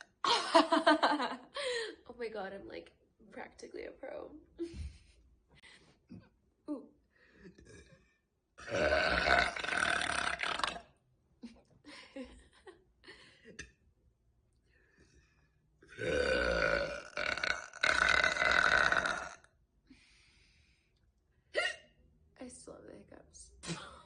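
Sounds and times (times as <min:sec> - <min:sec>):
woman burping: 0:08.6 - 0:10.9, 0:15.9 - 0:19.5, 0:21.6 - 0:21.9.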